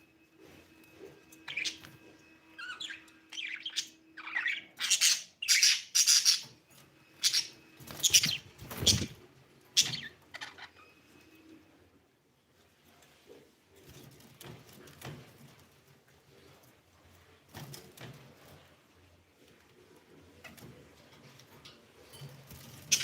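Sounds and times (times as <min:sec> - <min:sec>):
budgerigar chirping: 0:02.7 - 0:06.5, 0:07.2 - 0:09.2.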